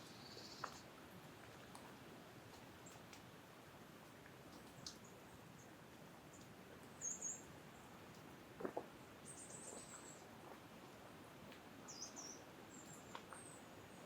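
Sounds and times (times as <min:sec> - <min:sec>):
small birds chirping: 0:00.0 - 0:00.9, 0:04.6 - 0:08.0, 0:08.7 - 0:10.3, 0:11.8 - 0:14.0.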